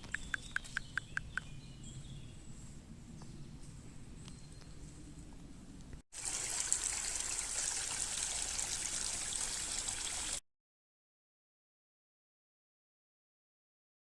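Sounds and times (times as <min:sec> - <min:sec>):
faint outdoor background: 0:00.0 - 0:10.4
flowing water rushing: 0:06.2 - 0:10.4.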